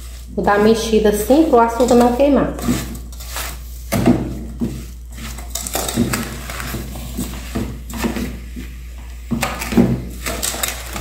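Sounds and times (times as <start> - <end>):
spoon scraping and knocking pan: 0.0 - 11.0.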